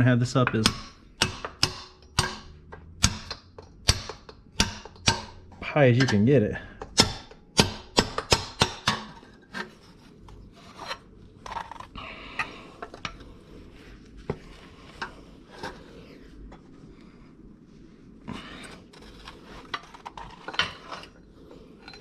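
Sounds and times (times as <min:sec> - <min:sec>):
metal tool knocking on metal: 0:00.4 - 0:09.2.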